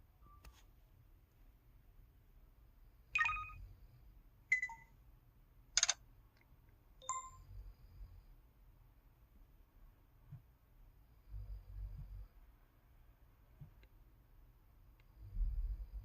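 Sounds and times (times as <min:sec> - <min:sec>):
phone keypad tones: 0:03.2 - 0:03.6, 0:04.5 - 0:04.9.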